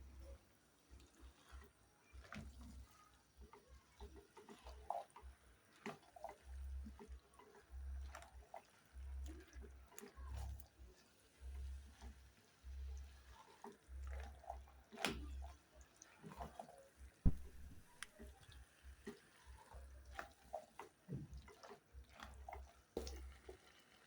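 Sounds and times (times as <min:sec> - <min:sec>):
spoon knocking on pot: 0:17.3 - 0:18.1.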